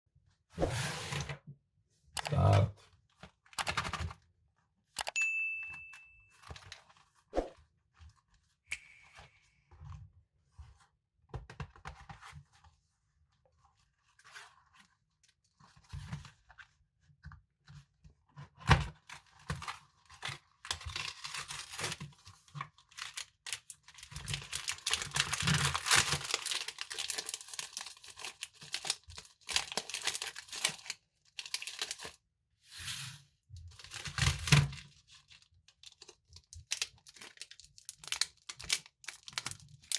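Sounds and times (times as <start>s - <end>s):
packaging crinkling and tearing: 19.6s - 32.2s, 33.8s - 39.9s.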